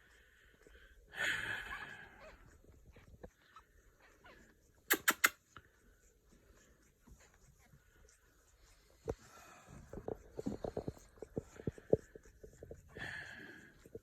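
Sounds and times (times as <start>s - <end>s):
sharp clicks: 4.9s - 5.4s.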